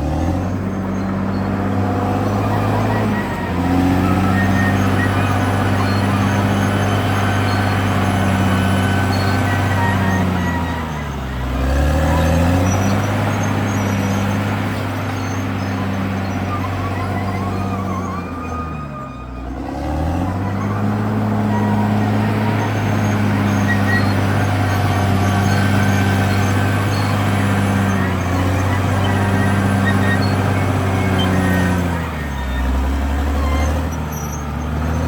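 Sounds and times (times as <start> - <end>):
bulldozer diesel engine running: 0.0 - 35.0.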